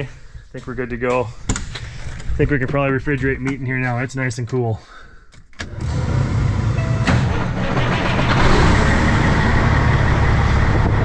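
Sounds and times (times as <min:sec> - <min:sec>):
vehicle engine running: 0:05.8 - 0:11.0.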